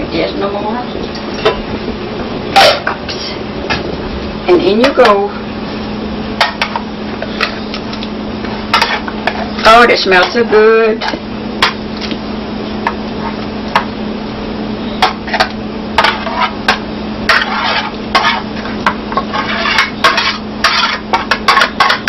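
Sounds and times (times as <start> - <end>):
steady hum: 0.0 - 22.0
metal utensil scraping pot: 8.7 - 10.6, 15.0 - 22.0.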